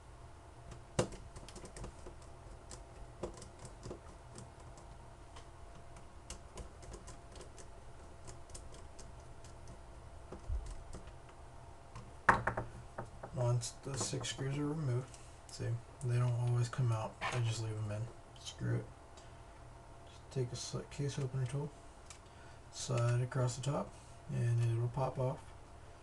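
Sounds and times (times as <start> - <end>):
knock: 12.3 - 13.4.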